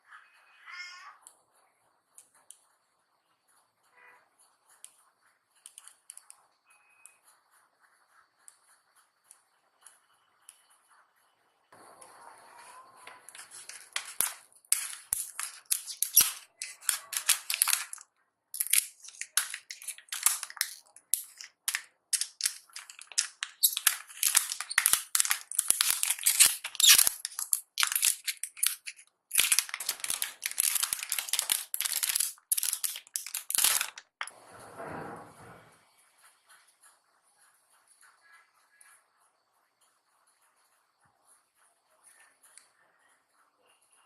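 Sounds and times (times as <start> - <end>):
plastic packaging crinkling: 13.1 - 34.3.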